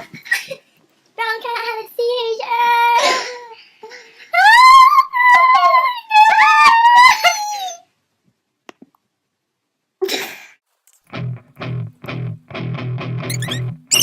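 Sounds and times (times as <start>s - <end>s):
young person squealing: 4.4s - 7.8s, 13.3s - 14.0s.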